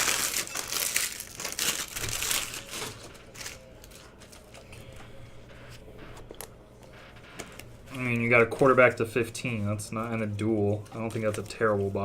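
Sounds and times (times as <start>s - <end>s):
plastic wrappers crinkling: 0.0s - 4.7s, 10.0s - 12.0s.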